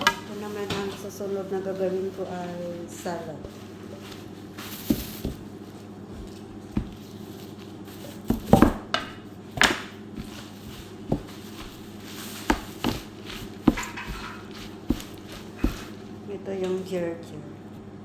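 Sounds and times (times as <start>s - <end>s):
steady low hum: 0.0s - 18.0s
utensils and dishes knocking: 12.4s - 15.9s
knife tapping on board: 13.7s - 15.9s.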